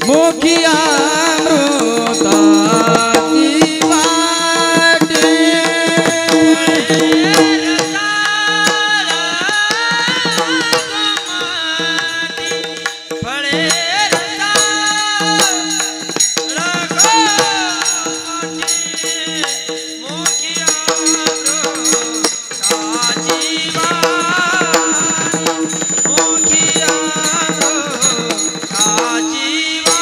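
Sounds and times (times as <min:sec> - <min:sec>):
person singing ornamented melody: 0:00.0 - 0:15.8, 0:16.6 - 0:30.0
jingling hand cymbals: 0:00.0 - 0:30.0
tabla: 0:00.0 - 0:30.0
held drone: 0:23.4 - 0:28.9.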